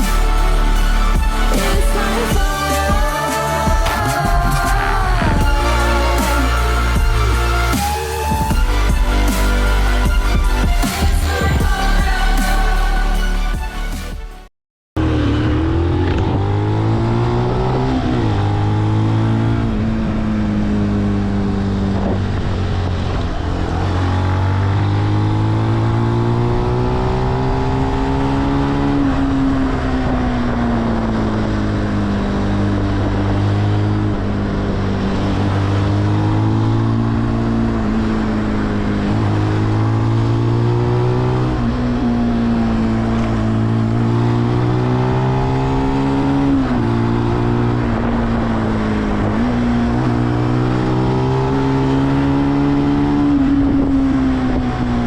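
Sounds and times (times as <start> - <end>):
motorcycle engine revving: 0.0 - 9.4, 15.0 - 55.0.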